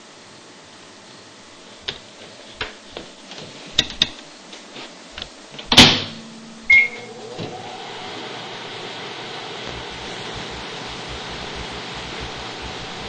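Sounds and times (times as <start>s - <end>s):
microwave oven running hum: 0.0s - 13.0s
keypad beep: 6.7s - 7.1s.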